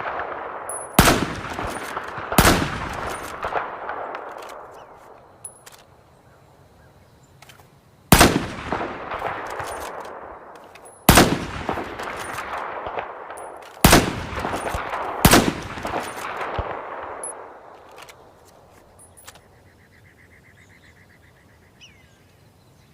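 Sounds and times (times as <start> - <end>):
rifle shots echoing: 0.0 - 5.9, 8.1 - 19.4.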